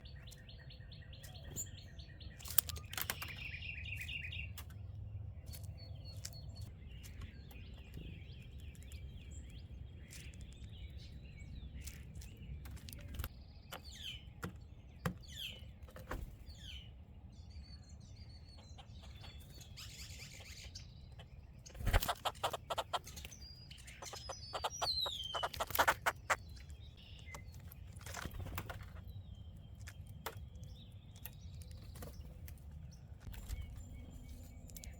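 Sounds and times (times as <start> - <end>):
songbirds chirping: 0.0 - 34.9
woodpecker calling: 18.5 - 32.2.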